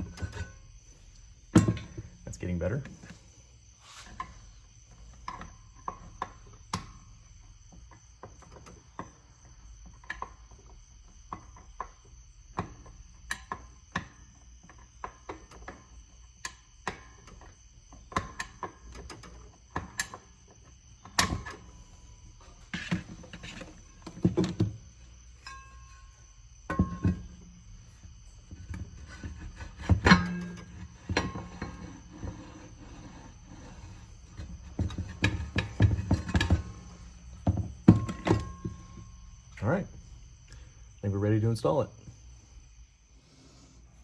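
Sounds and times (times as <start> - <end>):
heavier metal clunks: 0.0 - 3.3, 21.0 - 40.8.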